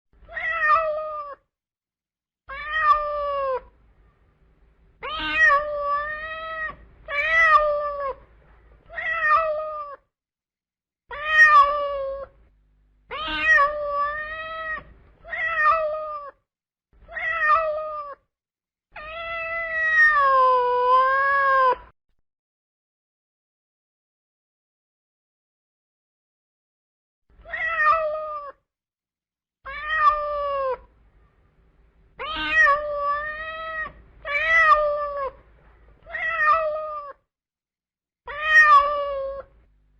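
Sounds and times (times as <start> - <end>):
cat meowing: 0.2 - 1.5, 2.5 - 3.8, 5.0 - 10.1, 11.1 - 12.4, 13.1 - 16.4, 17.0 - 18.3, 19.0 - 21.9, 27.4 - 28.6, 29.7 - 30.9, 32.2 - 35.4, 36.0 - 37.3, 38.3 - 39.6.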